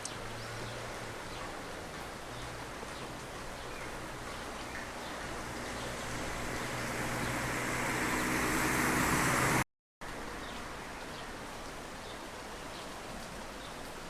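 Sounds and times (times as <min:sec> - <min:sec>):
outdoor background noise: 0:00.0 - 0:14.0
car engine hum: 0:04.2 - 0:09.6.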